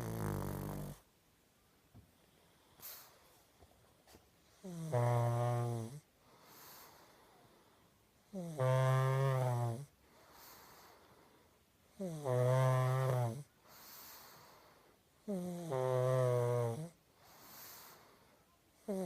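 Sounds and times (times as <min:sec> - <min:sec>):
dog snoring: 0:00.0 - 0:01.1, 0:04.5 - 0:07.4, 0:08.2 - 0:11.3, 0:11.9 - 0:18.2
soft dog breathing: 0:02.1 - 0:04.8, 0:06.0 - 0:08.0, 0:09.9 - 0:11.6, 0:13.4 - 0:15.0, 0:16.9 - 0:18.5.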